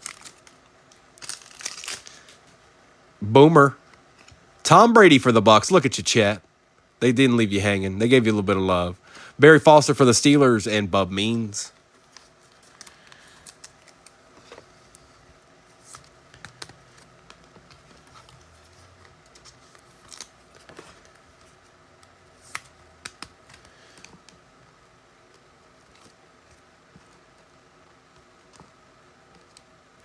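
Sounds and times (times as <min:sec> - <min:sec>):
trading cards being handled: 0:00.0 - 0:02.6, 0:11.2 - 0:24.4.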